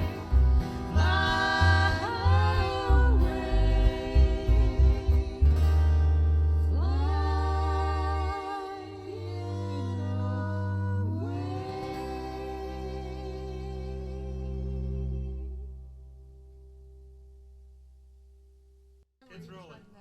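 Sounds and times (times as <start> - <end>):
choir singing held notes: 0.0 - 15.6
pulsing bass line: 0.0 - 19.0
guitar: 0.0 - 20.0.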